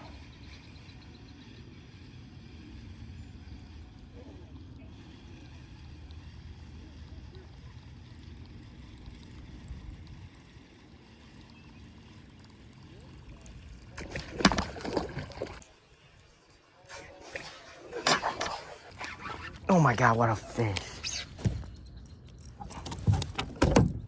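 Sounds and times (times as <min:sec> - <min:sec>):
fish splashing at lure: 0:12.4 - 0:22.8.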